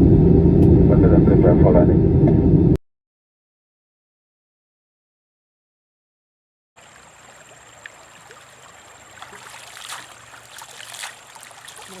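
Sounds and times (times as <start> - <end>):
small splashes: 6.8 - 12.0
water trickling and splashing: 6.8 - 12.0.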